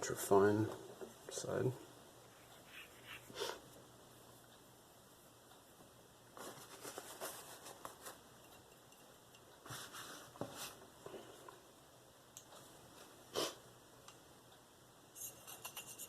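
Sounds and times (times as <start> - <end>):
knife scraping on stone: 15.2 - 16.0.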